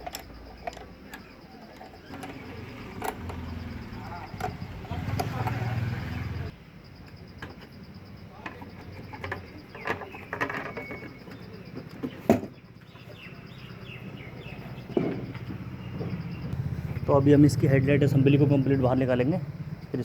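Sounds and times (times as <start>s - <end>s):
hand tools and metal parts clicking: 0.0s - 7.8s, 8.4s - 13.3s
faint bird chirps: 0.3s - 20.0s.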